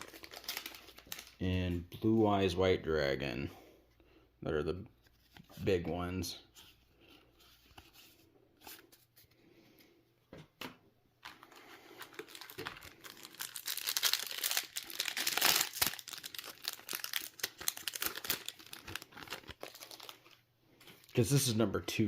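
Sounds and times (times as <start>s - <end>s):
foil wrapper tearing and crinkling: 0.0s - 1.4s, 12.0s - 20.4s.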